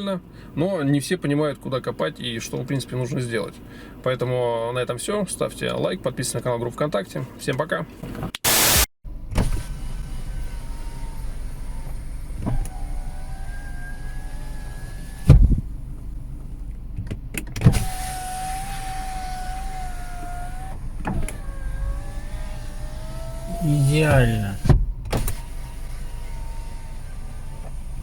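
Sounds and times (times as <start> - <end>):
car window motor humming: 9.4 - 28.0
window glass thumping at end: 15.2 - 15.6.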